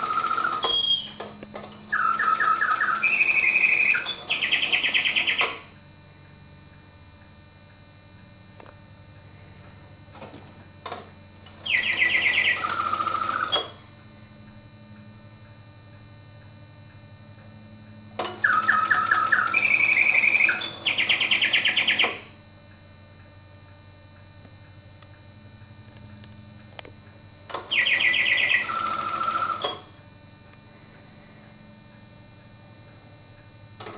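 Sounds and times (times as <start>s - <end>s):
mechanical bird whistling trills: 0.0s - 5.7s, 11.6s - 13.8s, 18.2s - 22.3s, 27.6s - 29.9s
faint steady hum: 0.0s - 33.9s.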